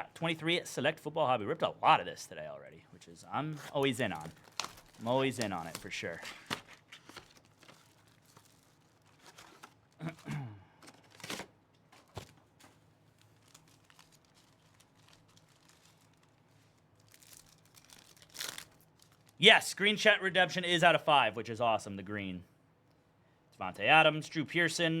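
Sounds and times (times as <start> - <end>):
wrappers torn and crinkled: 3.6 - 19.4.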